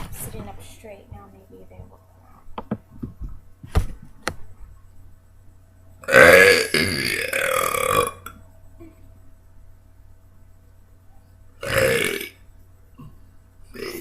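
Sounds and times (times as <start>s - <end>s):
girl burping loudly: 6.0s - 8.9s, 11.6s - 12.4s, 13.8s - 14.0s.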